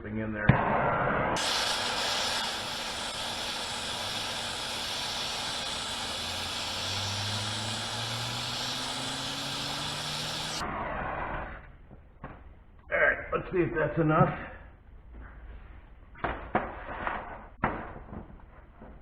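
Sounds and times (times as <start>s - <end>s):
heat gun blowing air: 1.4s - 10.6s.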